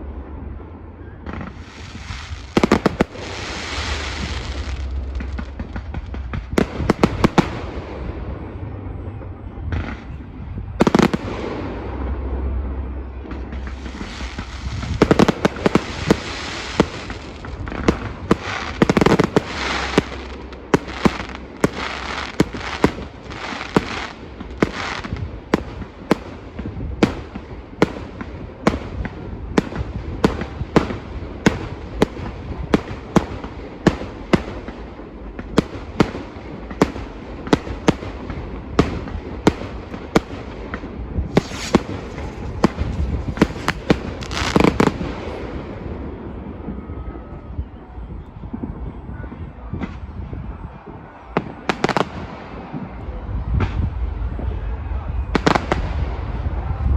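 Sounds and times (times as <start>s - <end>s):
dense firework crackle: 0.0s - 56.9s
low rumble: 0.0s - 56.9s
firework shells bursting with bangs: 13.3s - 45.4s.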